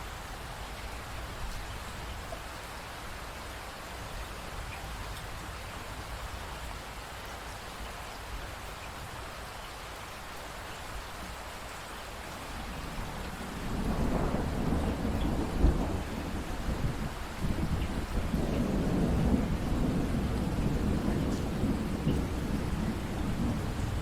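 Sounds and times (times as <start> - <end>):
steady rain hiss: 0.0 - 24.0
low rumble of thunder: 12.4 - 24.0.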